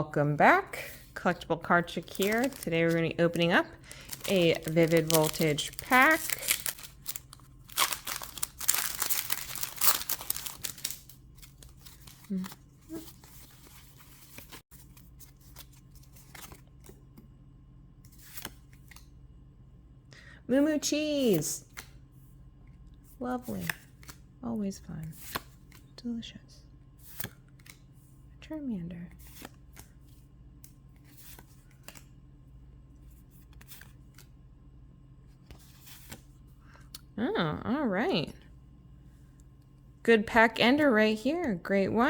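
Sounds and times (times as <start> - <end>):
cards rustling: 0.9 - 17.2, 29.1 - 32.2.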